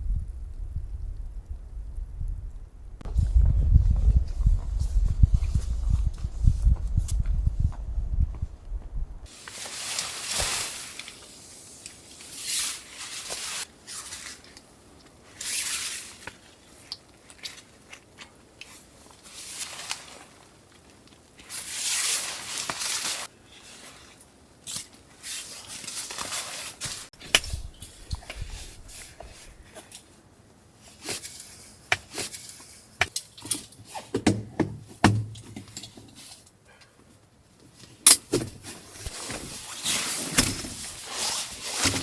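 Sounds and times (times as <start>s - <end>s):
rustling and crunching: 9.2s - 36.9s, 37.6s - 42.0s.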